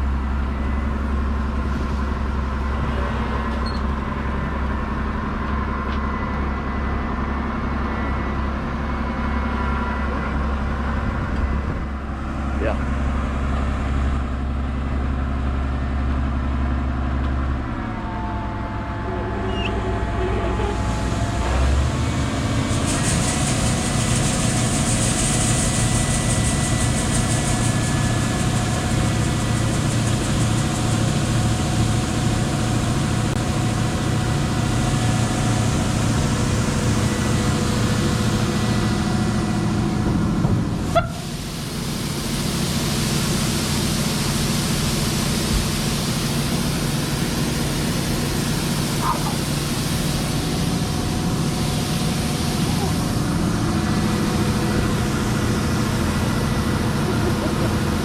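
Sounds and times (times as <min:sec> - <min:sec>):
combine engine running: 0:00.0 - 0:58.0
loud rushing hiss: 0:20.7 - 0:58.0.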